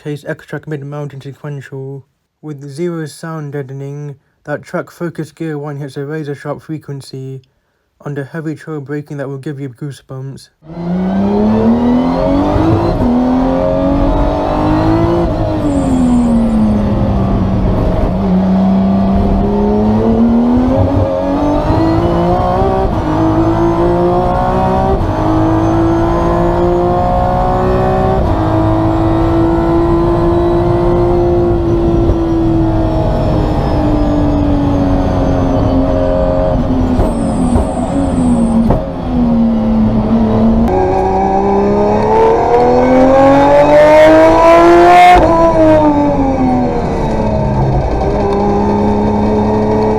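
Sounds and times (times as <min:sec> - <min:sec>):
gearbox whine: 0:10.7 - 0:41.8, 0:45.1 - 0:49.9.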